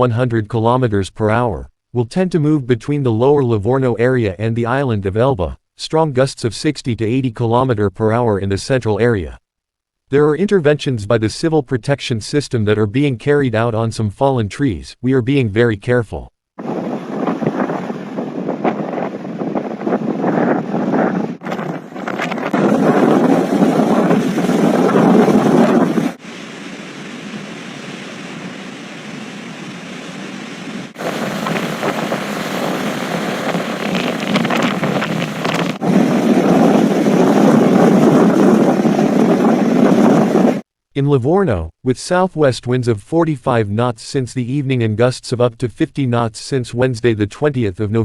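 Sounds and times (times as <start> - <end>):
wind buffeting microphone: 16.6 - 27.5, 30.8 - 40.6
surf rushing: 16.6 - 40.6.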